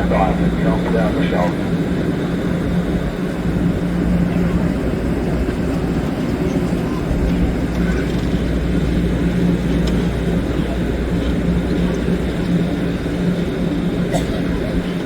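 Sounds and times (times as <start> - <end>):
diesel locomotive idling drone: 0.0 - 15.0.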